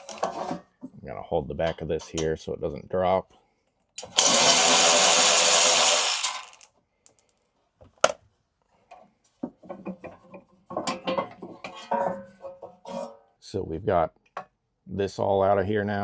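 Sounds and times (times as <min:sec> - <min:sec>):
light clatter of parts: 0:00.0 - 0:01.0, 0:06.2 - 0:13.3
power driver spinning out bolt: 0:04.0 - 0:06.7.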